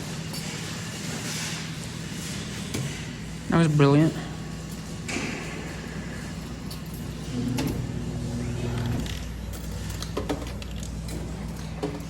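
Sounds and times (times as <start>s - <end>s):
electrical hum: 0.0s - 12.0s
claw machine motor whirring: 7.3s - 9.6s.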